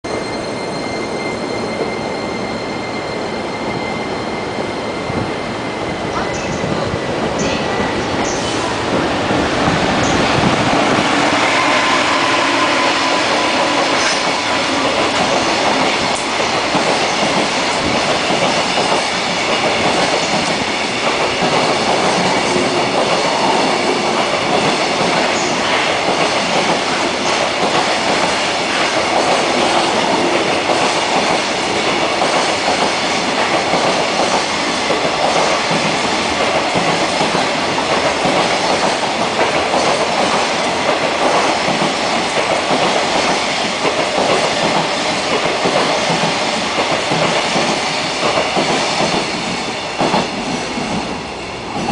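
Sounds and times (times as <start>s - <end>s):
freight train wheels rumbling: 0.0s - 51.9s.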